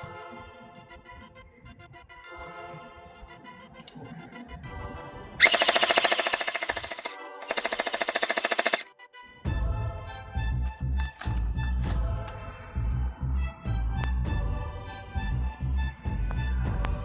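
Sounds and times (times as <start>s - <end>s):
background music: 0.0s - 17.0s
gel blaster firing bursts: 5.4s - 8.8s.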